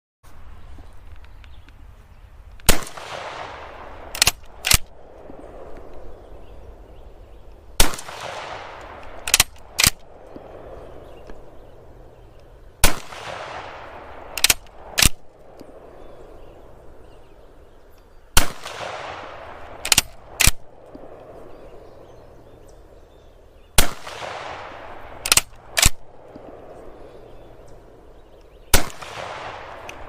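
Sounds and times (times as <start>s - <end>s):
sharp gunshot cracks: 2.6s - 6.0s, 7.8s - 11.0s, 12.8s - 15.9s, 18.3s - 21.4s, 23.8s - 26.7s, 28.7s - 30.0s
loud gunshot with echo: 12.8s - 14.4s, 18.4s - 19.6s, 23.8s - 25.0s.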